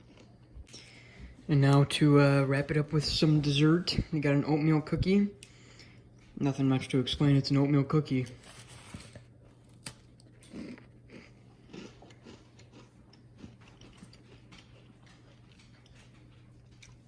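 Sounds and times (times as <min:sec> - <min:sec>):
faint cookie chewing: 0:00.0 - 0:01.4, 0:08.2 - 0:17.0
low steady hum: 0:00.0 - 0:17.0.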